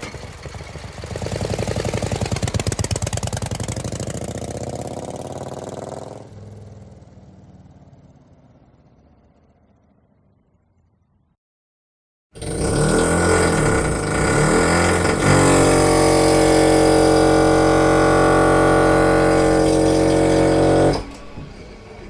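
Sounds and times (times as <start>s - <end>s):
motorcycle engine revving: 0.0s - 9.9s, 12.4s - 21.7s.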